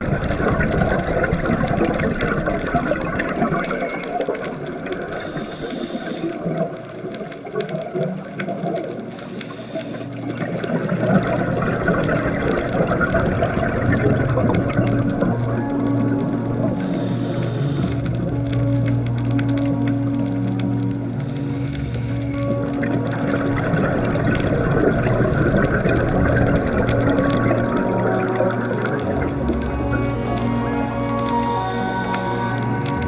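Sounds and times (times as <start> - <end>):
moving water: 0.0 - 33.0
low sustained tones: 8.8 - 33.0.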